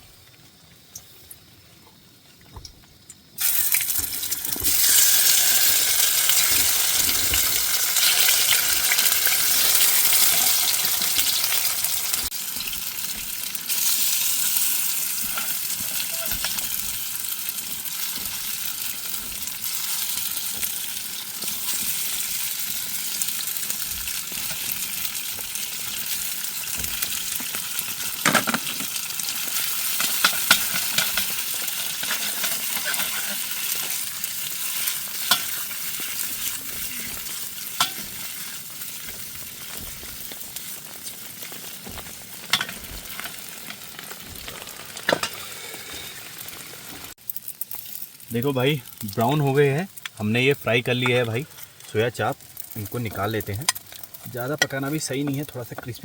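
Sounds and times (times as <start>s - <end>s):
food sizzling in oil: 3.0s - 56.0s.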